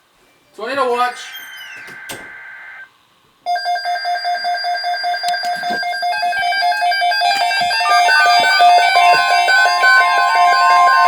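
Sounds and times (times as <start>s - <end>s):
electronic alert tune: 1.2s - 2.9s, 5.4s - 11.0s.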